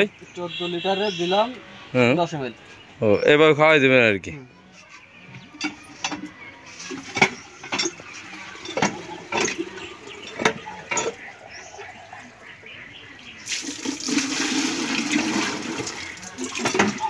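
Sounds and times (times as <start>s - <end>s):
water pouring: 13.4s - 17.0s.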